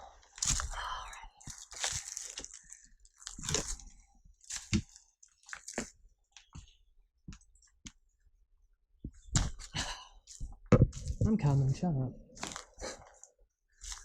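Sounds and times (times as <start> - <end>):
footsteps crunching on rubble: 1.4 - 7.4, 9.1 - 11.7, 12.3 - 13.1, 13.8 - 14.0.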